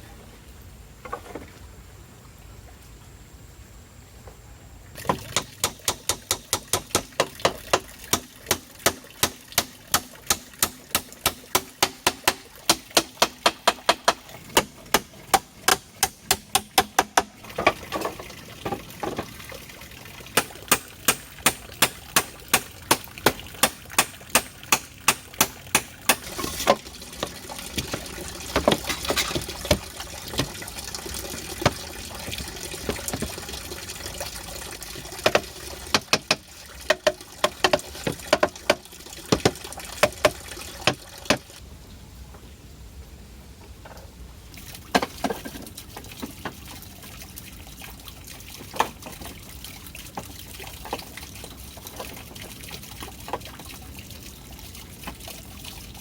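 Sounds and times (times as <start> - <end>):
running water hissing: 4.9 - 41.6
sharp knocks: 5.0 - 17.8.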